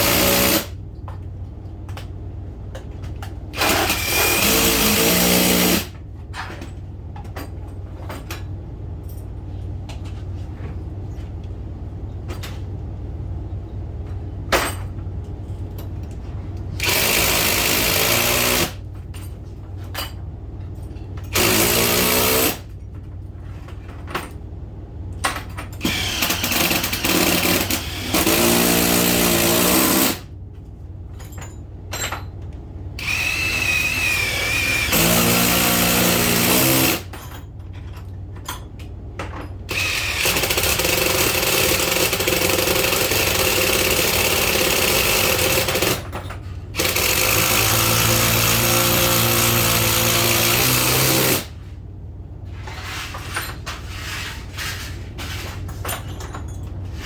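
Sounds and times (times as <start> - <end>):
power drill running: 0.0 - 0.7, 3.6 - 5.9, 16.8 - 18.8, 21.3 - 22.6, 25.8 - 30.2, 33.0 - 37.1, 39.7 - 46.0, 46.8 - 51.5.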